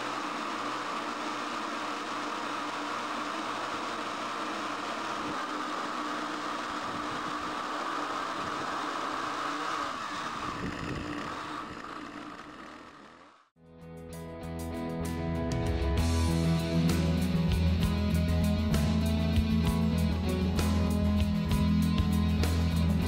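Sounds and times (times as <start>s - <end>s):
chainsaw engine running: 0.0s - 13.5s.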